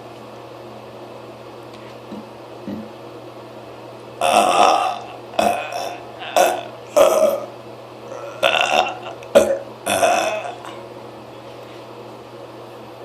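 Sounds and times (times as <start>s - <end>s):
person burping: 4.2s - 10.8s.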